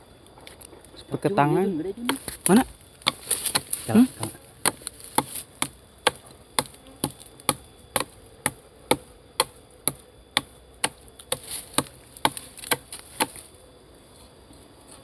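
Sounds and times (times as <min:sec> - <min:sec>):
axe chopping wood: 0:02.1 - 0:13.4.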